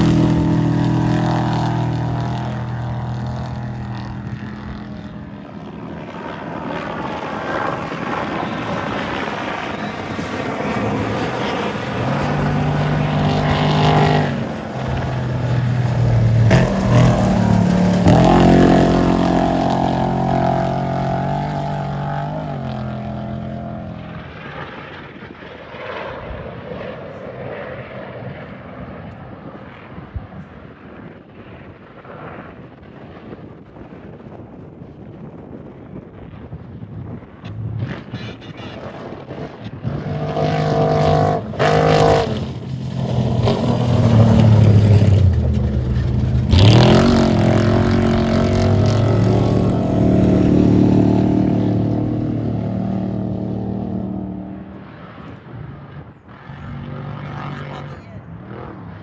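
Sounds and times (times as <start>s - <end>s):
race truck engines passing: 0.0s - 24.3s, 39.2s - 59.0s.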